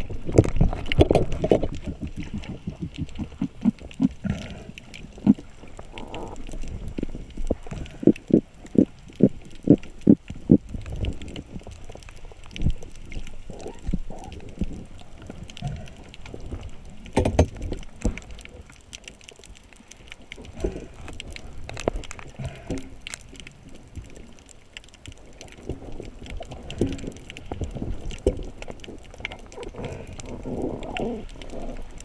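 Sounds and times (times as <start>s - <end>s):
water noise: 0.0s - 32.0s.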